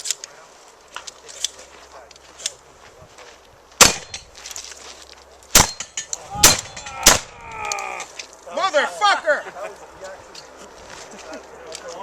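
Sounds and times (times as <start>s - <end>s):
loud shotgun shot with echo: 3.8s - 4.2s, 5.6s - 7.4s.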